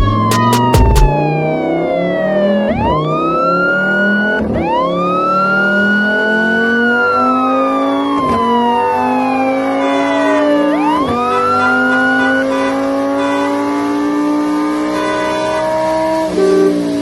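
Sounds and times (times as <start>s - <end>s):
background music with low notes: 0.0s - 1.4s
siren-like wailing tone: 0.0s - 17.0s.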